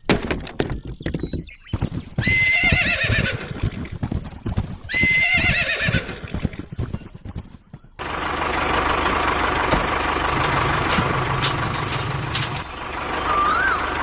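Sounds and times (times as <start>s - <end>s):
hoof clip-clops: 0.9s - 8.0s
horse whinnying: 2.2s - 3.8s, 4.9s - 6.5s.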